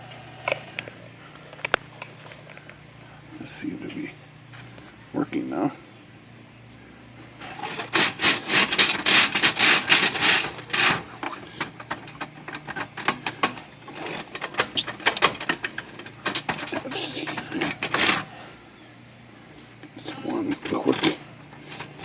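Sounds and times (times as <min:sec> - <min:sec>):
stiff brush scrubbing plastic: 0:07.4 - 0:18.6, 0:19.6 - 0:22.0.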